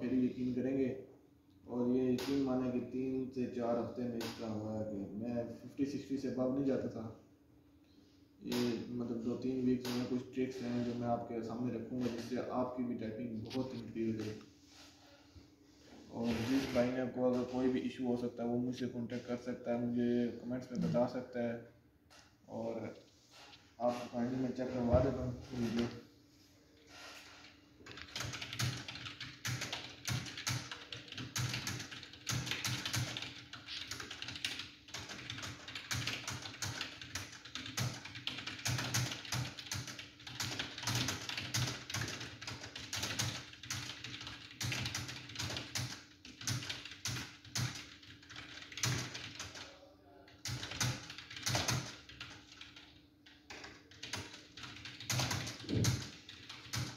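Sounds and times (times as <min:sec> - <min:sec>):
fast keyboard typing: 0:02.2 - 0:02.8, 0:08.5 - 0:11.0, 0:27.0 - 0:49.7, 0:50.3 - 0:56.9.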